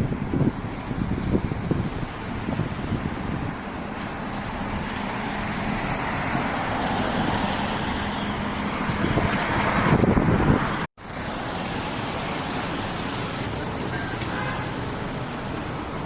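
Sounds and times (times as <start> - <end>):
wind on microphone: 0.0 - 3.8, 4.5 - 10.9
street traffic noise: 0.0 - 16.0.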